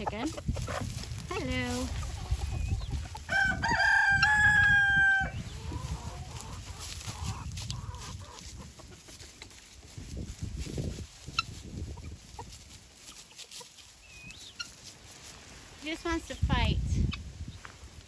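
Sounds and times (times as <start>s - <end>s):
rooster crowing: 3.3s - 5.4s.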